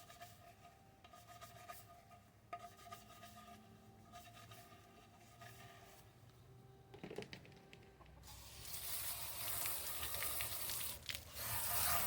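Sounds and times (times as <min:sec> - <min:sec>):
water spraying from a hose: 0:08.3 - 0:12.0.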